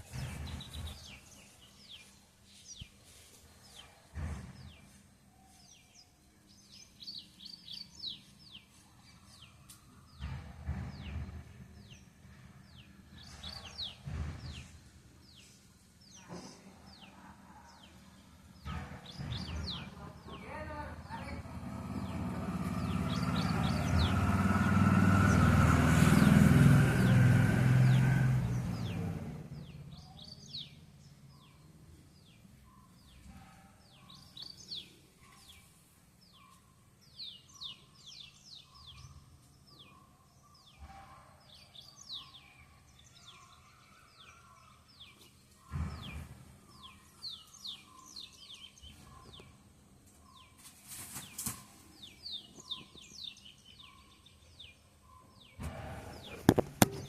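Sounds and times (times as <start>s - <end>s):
passing vehicle rumbling: 0.0s - 2.2s, 9.4s - 16.2s, 17.8s - 35.6s, 55.4s - 57.0s
small birds chirping: 0.0s - 57.0s.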